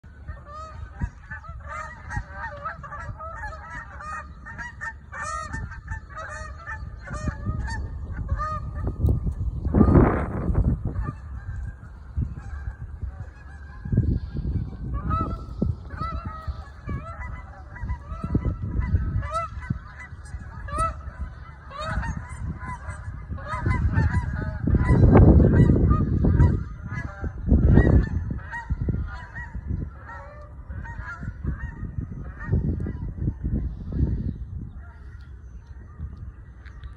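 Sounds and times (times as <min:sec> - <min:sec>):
geese honking: 0:00.1 - 0:36.9.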